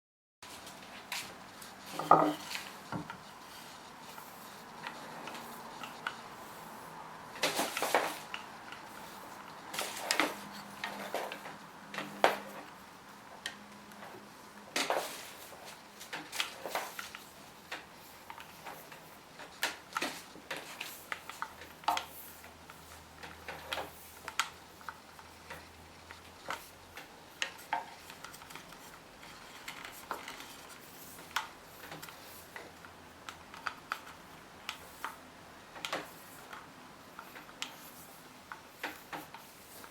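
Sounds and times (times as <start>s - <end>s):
hard objects knocking and clicking: 1.9s - 3.3s.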